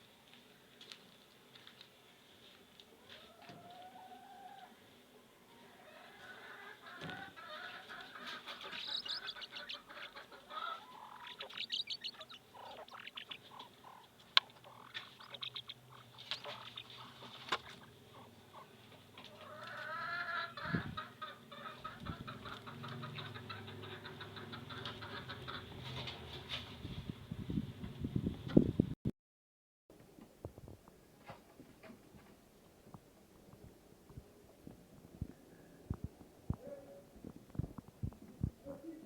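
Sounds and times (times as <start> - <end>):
fowl clucking and chirping: 5.5 - 26.1
fowl warbling call: 6.1 - 25.4.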